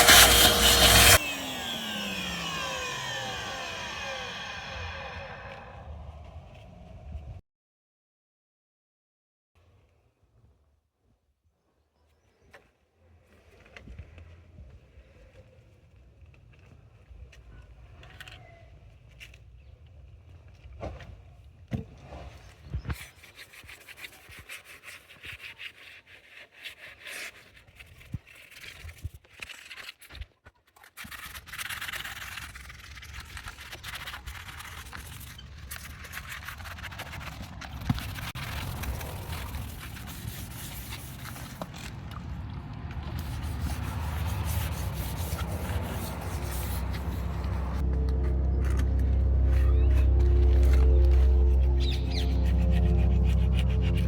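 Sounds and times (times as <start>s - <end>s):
hand tools scraping a door: 0.0s - 1.2s, 35.8s - 41.9s, 43.0s - 47.8s.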